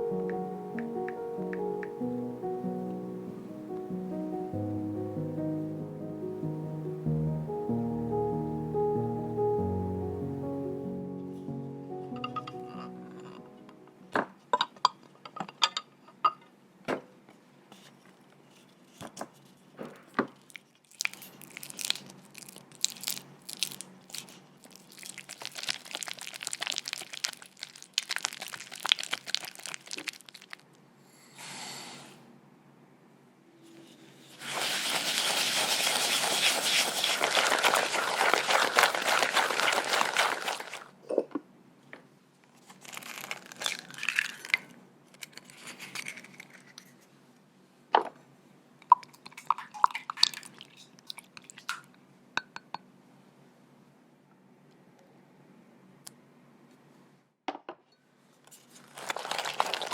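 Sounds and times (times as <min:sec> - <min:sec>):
packaging crinkling and tearing: 0:20.5 - 0:30.8, 0:34.4 - 0:40.9, 0:42.6 - 0:46.8, 0:58.7 - 0:59.9
rapid scratchy rubbing: 0:34.4 - 0:40.6.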